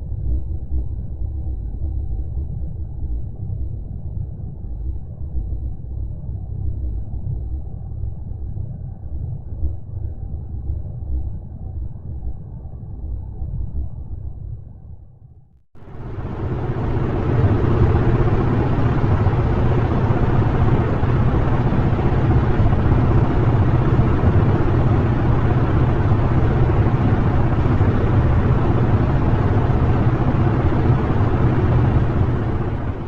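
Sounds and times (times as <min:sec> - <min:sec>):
dense low rumble: 0:15.8 - 0:33.0.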